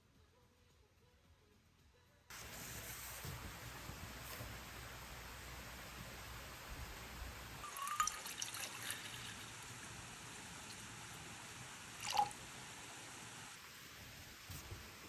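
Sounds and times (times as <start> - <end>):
low steady hiss: 0.0 - 15.0
water dripping: 7.6 - 13.2.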